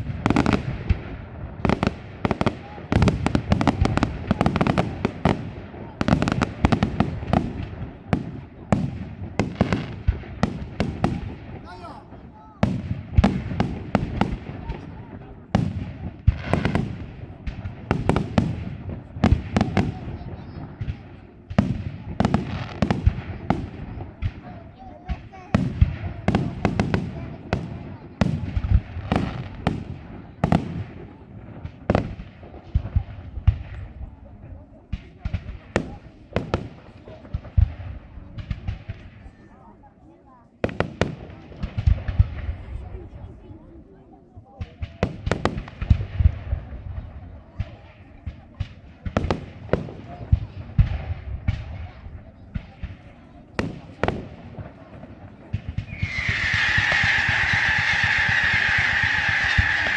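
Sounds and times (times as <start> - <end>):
fireworks bursting bangs: 0.0 - 59.9
firework shells bursting: 52.7 - 59.9.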